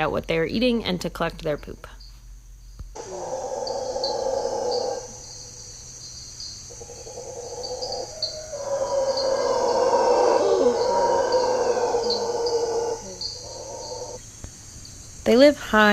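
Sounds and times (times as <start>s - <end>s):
howler monkeys roaring: 3.0s - 5.7s, 6.7s - 14.2s.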